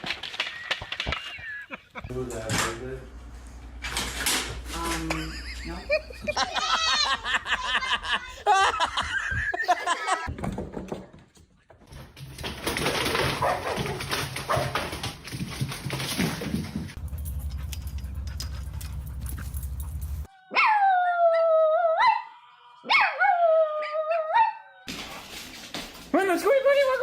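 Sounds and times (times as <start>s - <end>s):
dog howling: 20.2s - 24.9s.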